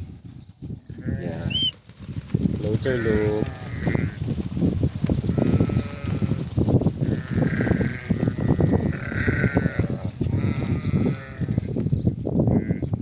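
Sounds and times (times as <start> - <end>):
low rumble of flock: 0.2 - 13.0
sheep bleating: 1.0 - 1.7, 2.8 - 4.2, 5.3 - 6.4, 7.1 - 11.7.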